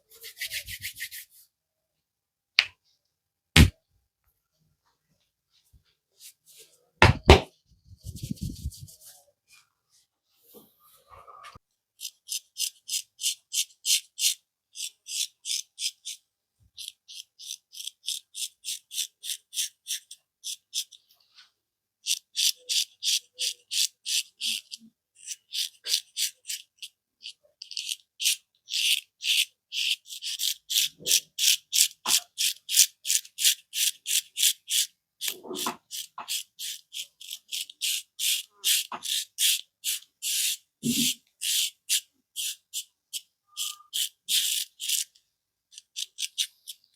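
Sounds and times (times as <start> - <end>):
hands rubbing skin and hair: 0.2 - 1.4, 8.0 - 9.1.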